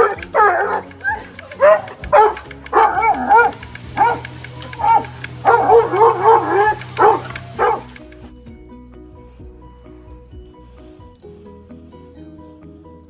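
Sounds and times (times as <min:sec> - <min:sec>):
dog yipping and yowling: 0:00.0 - 0:08.3.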